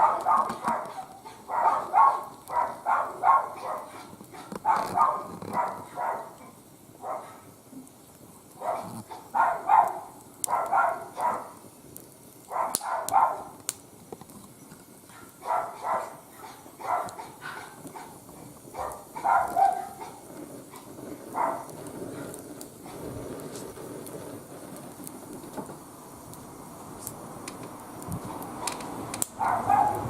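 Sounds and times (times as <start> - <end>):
dog barking: 0.0 - 7.5, 8.6 - 11.6, 12.5 - 13.6, 15.1 - 21.7, 29.4 - 30.0
wood fire crackling: 0.0 - 30.0.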